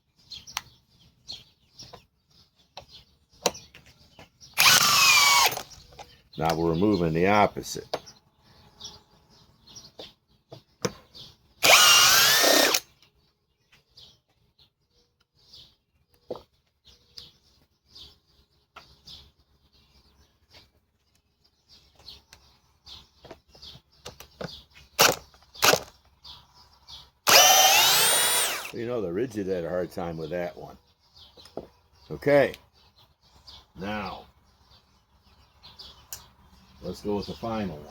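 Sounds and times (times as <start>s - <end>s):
cordless drill motor whining: 4.6s - 6.0s, 11.6s - 12.9s, 25.0s - 25.9s, 27.2s - 28.8s.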